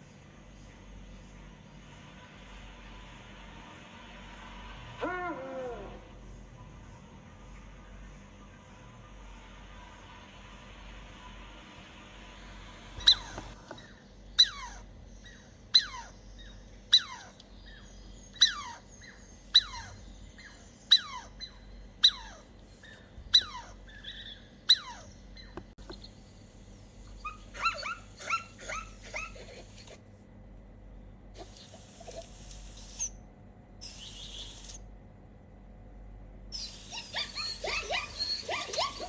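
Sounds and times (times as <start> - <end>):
dog yelping: 5.0 - 6.1, 13.0 - 13.4, 14.4 - 16.2, 16.9 - 17.4, 19.6 - 22.5, 23.3 - 25.1, 27.2 - 30.0, 36.6 - 39.0.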